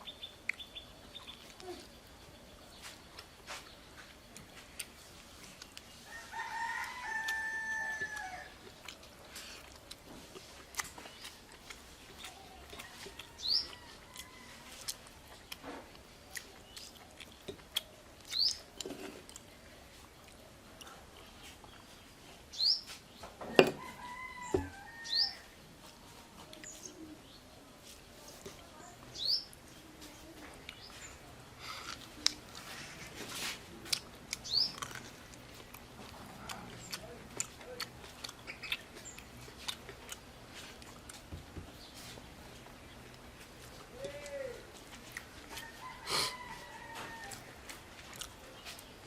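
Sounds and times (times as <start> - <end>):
rooster crowing: 6.1 - 8.6, 23.6 - 25.5, 45.5 - 47.6
small bird chirping: 18.2 - 18.7, 34.4 - 34.8.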